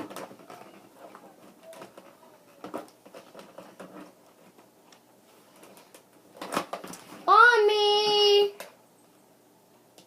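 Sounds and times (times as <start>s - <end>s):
small packaging clicks: 0.0s - 7.1s.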